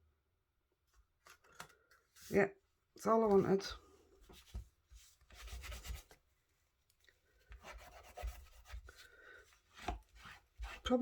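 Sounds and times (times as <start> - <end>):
rubbing on paper and card: 4.3 - 6.2, 7.5 - 11.0.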